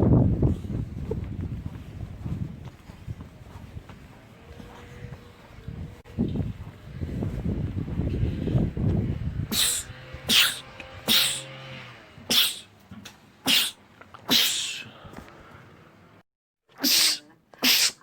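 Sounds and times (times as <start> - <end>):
man sneezing: 9.5 - 11.5, 12.3 - 12.7, 13.5 - 15.0, 16.8 - 18.0.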